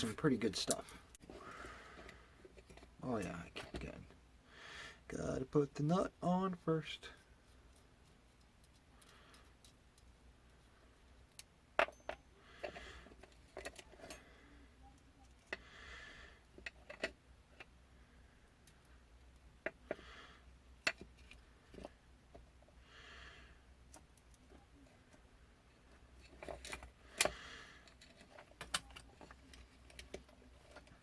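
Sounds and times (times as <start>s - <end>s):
metal parts and tools clicking: 0.6s - 1.2s, 26.2s - 31.0s.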